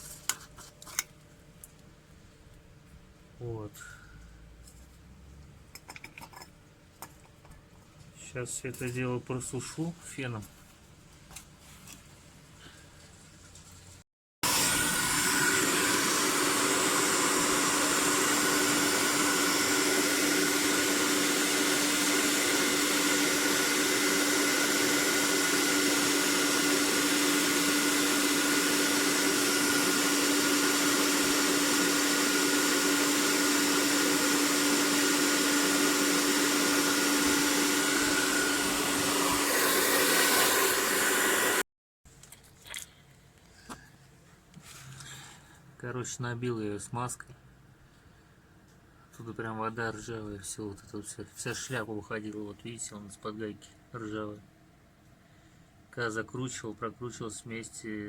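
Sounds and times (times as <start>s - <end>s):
hair dryer blowing: 14.4s - 41.7s.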